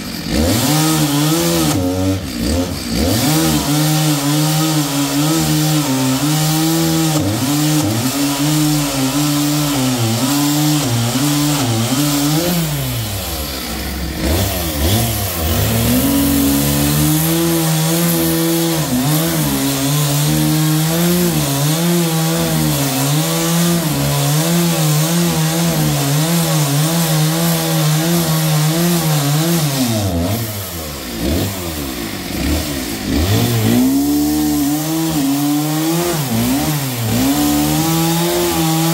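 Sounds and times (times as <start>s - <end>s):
sawmill saw cutting logs: 0.0s - 38.9s.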